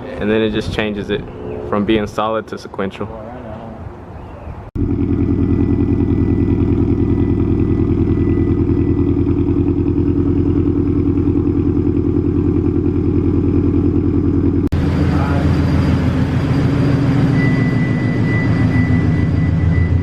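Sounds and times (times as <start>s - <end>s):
car engine running: 4.8s - 20.0s.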